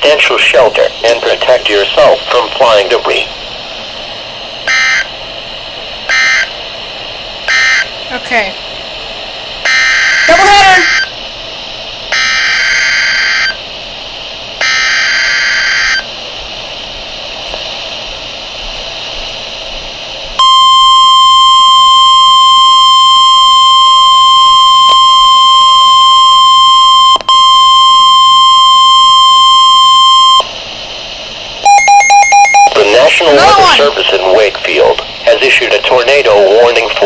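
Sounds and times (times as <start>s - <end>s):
radio hiss: 0.0s - 21.0s, 23.4s - 37.0s
steady alarm tone: 4.6s - 5.3s, 6.0s - 6.6s, 7.4s - 8.4s, 9.6s - 11.2s, 12.1s - 13.7s, 14.6s - 16.2s, 20.4s - 30.6s, 31.6s - 34.2s
screeching digital data bursts: 9.7s - 11.2s, 12.1s - 13.6s, 14.6s - 16.1s, 31.6s - 33.9s.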